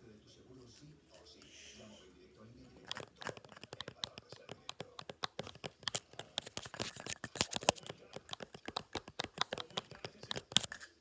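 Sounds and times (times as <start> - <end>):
plastic fidget toys clicking: 2.8 - 11.0.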